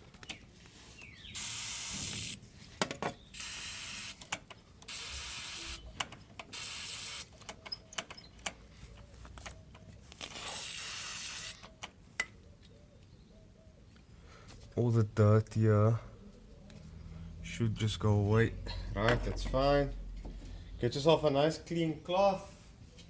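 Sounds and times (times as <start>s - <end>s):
aerosol can hissing: 1.4s - 2.4s, 3.4s - 4.2s, 4.9s - 5.8s, 6.5s - 7.3s, 10.3s - 11.6s.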